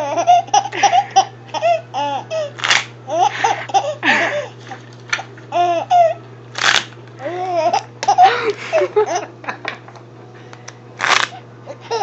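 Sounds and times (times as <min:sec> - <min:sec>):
baby giggling: 0:00.0 - 0:02.5, 0:03.1 - 0:04.5, 0:05.5 - 0:06.2, 0:07.2 - 0:09.3, 0:11.7 - 0:12.0.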